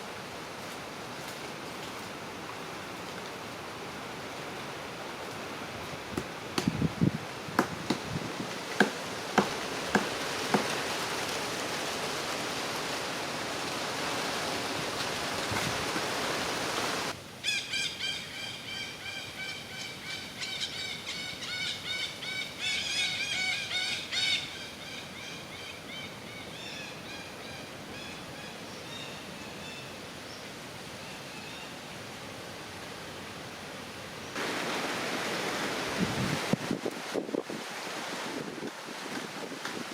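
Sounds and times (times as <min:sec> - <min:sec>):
steady hiss: 0:00.0 - 0:17.5, 0:27.7 - 0:39.9.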